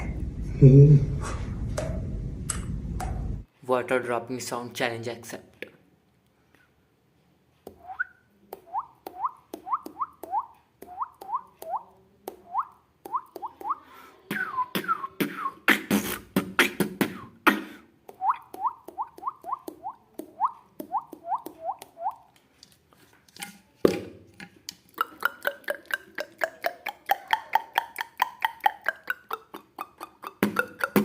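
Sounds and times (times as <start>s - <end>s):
beatboxed clicks and beats: 7.6s - 22.4s, 24.4s - 31.0s
beatboxed water-drop plops: 8.5s - 22.3s, 24.7s - 31.0s.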